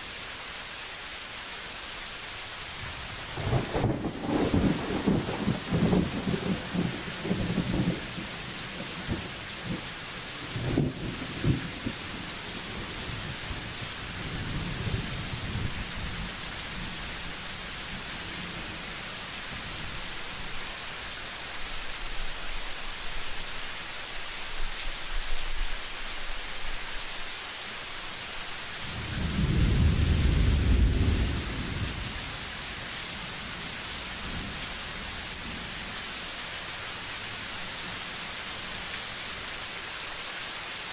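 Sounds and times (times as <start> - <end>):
steady rain falling: 0.0 - 40.9
thunder rolling: 3.4 - 8.3, 29.0 - 32.2.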